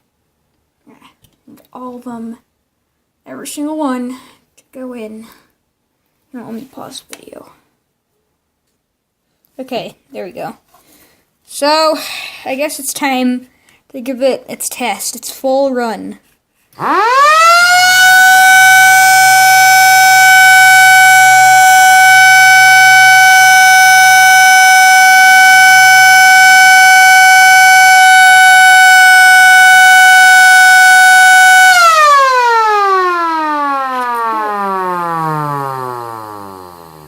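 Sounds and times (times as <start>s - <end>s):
air raid siren wailing: 16.8s - 37.0s.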